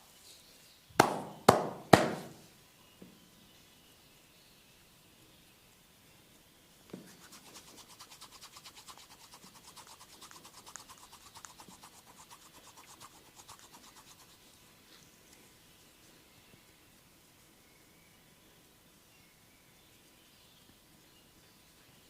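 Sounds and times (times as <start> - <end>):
hands rubbing over skin: 7.0 - 14.5.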